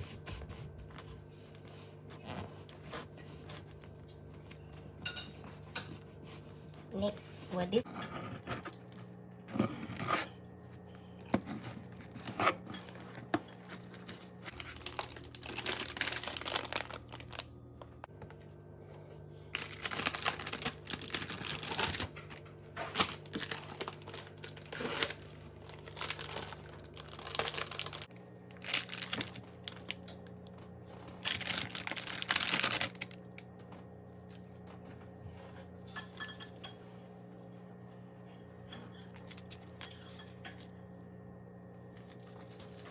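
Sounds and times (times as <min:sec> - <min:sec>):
food packaging crinkling and tearing: 0:11.5 - 0:18.1, 0:19.5 - 0:35.0.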